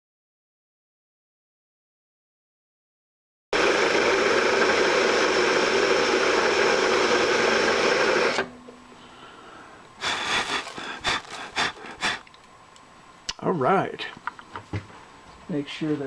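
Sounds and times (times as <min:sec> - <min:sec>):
milling machine cutting metal: 0:03.6 - 0:08.5.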